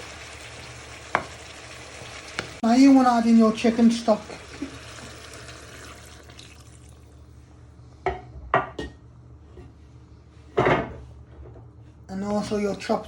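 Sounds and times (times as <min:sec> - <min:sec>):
stock pouring into a pan: 0:04.3 - 0:07.1.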